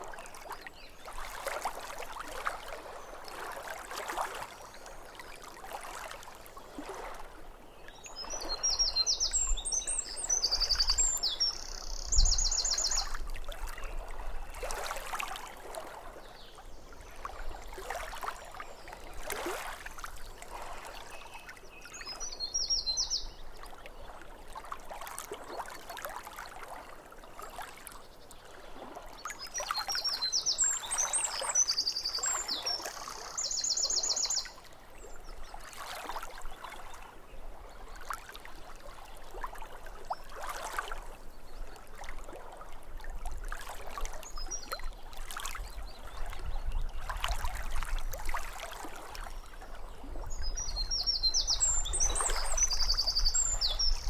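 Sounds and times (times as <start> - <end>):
small waves lapping at shore: 0.0 - 54.0
songbird chirping and trilling: 8.0 - 13.2, 29.4 - 34.6, 50.3 - 54.0.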